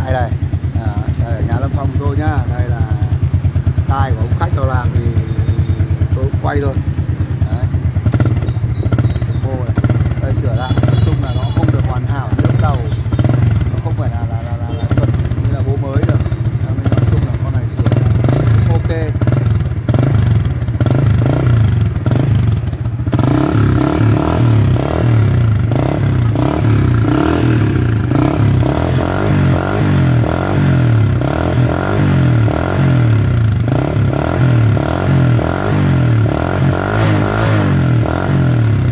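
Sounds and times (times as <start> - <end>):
small motorcycle engine running: 0.0 - 38.9.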